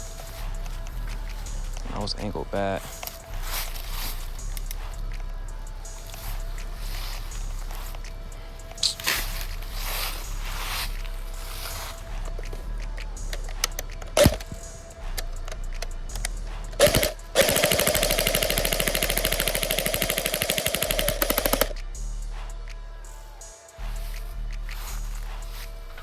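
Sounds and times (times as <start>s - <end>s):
airsoft gun firing: 14.2s - 14.6s, 16.8s - 21.7s.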